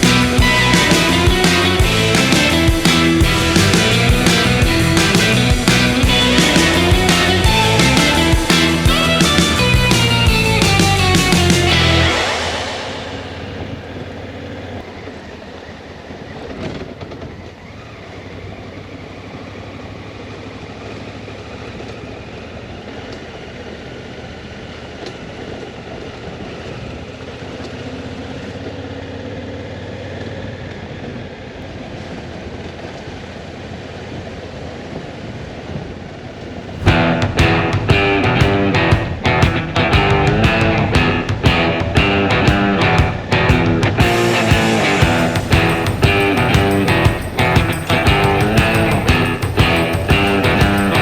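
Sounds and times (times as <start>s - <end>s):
motorcycle engine: 0.0s - 31.6s, 36.3s - 51.0s.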